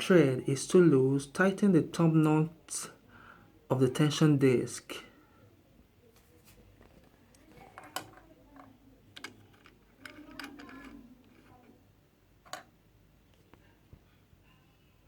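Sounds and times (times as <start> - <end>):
light handling noise: 6.1 - 11.8.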